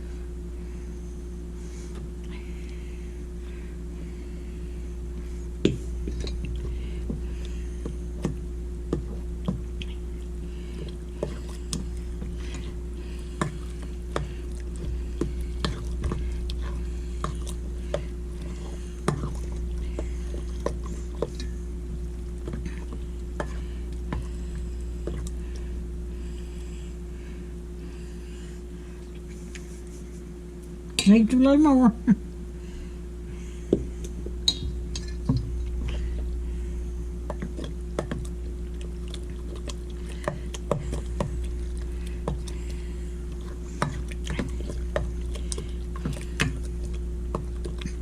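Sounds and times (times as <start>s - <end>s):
low electrical hum: 0.0s - 48.0s
wet squishing of stirred food: 5.8s - 25.8s, 33.8s - 48.0s.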